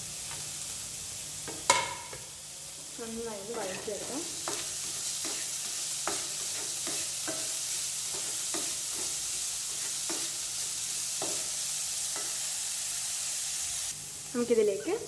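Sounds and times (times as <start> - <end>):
vegetables sizzling in oil: 0.0 - 15.0
utensil scraping a pan: 3.5 - 10.4.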